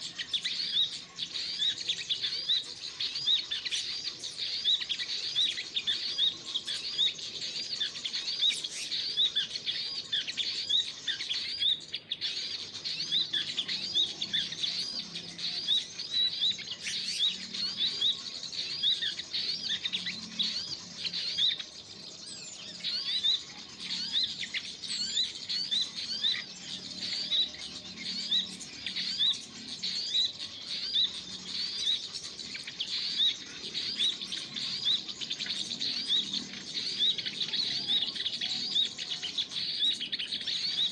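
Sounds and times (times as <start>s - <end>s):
small birds chirping: 0.0s - 40.9s.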